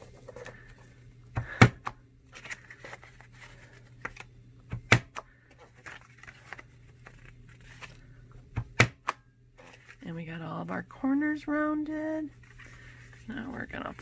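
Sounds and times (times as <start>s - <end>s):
paper handling: 2.2s - 4.4s, 5.4s - 8.2s, 9.6s - 10.0s.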